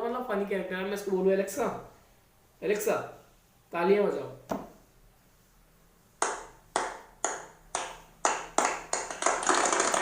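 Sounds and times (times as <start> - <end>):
clapping from smart speaker: 6.2 - 10.0.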